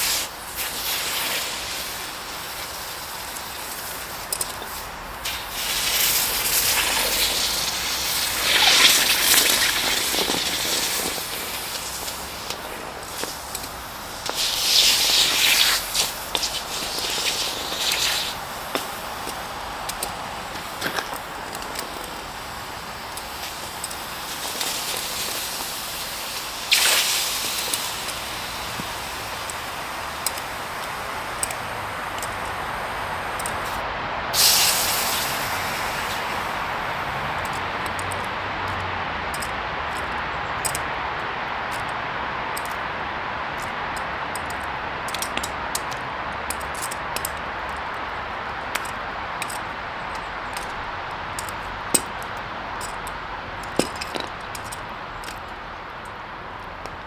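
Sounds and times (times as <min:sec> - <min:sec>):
loud hissing bursts: 0:00.0 - 0:37.6
gas burner hissing: 0:00.0 - 0:37.8.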